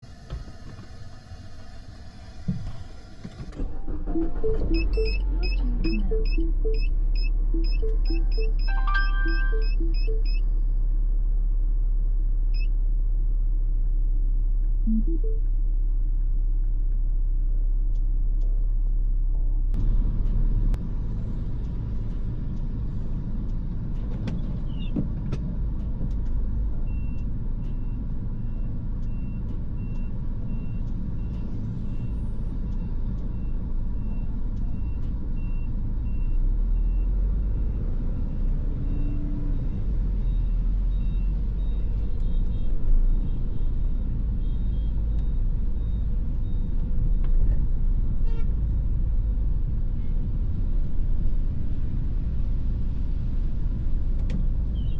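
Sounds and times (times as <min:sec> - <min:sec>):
car engine rumble from inside: 0:00.0 - 0:54.9
electronic beeps: 0:04.1 - 0:10.4, 0:14.9 - 0:15.4.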